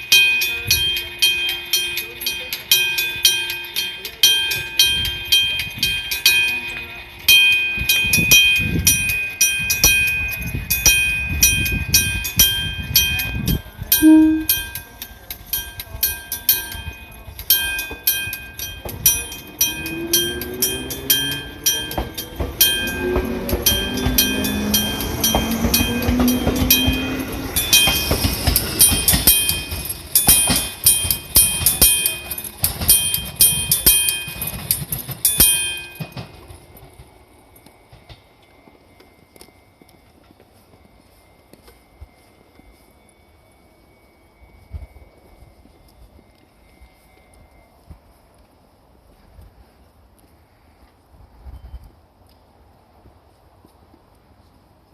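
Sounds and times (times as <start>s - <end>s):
level crossing bell ringing: 14.0s - 14.9s, 15.7s - 36.3s.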